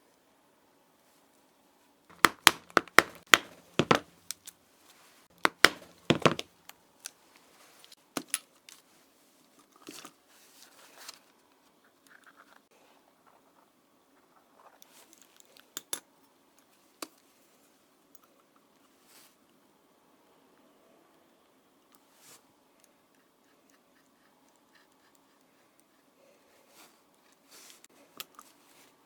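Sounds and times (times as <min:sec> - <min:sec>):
leather-working clicks and taps: 0:02.1 - 0:04.5, 0:05.4 - 0:06.5.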